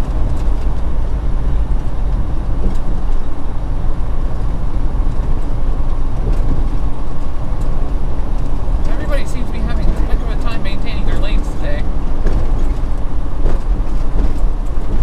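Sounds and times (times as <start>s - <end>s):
diesel engine drone: 0.0s - 15.0s
road noise: 0.0s - 15.0s
wind noise: 0.0s - 15.0s.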